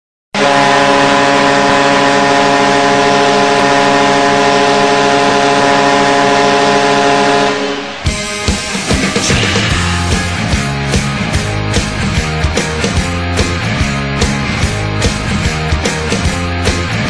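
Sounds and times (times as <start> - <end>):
arena goal horn blast: 0.4 - 8.1
rock song with drums: 7.9 - 17.0.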